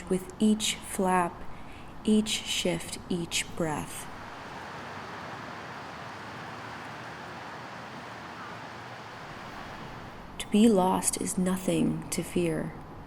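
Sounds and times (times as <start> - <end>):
steady rushing noise: 4.1 - 10.4.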